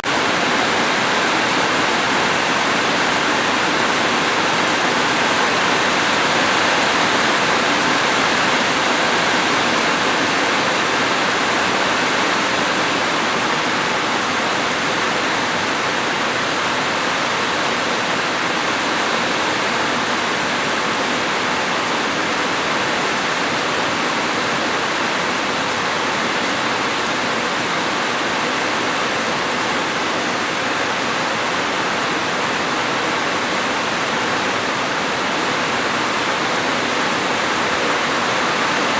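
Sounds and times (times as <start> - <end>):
dense rain hiss: 0.1 - 38.9.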